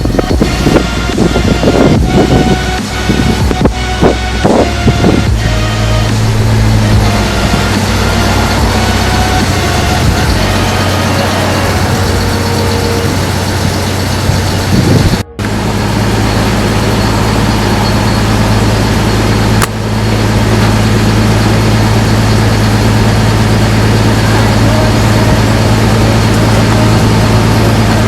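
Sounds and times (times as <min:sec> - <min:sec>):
car engine idling: 0:00.0 - 0:28.0.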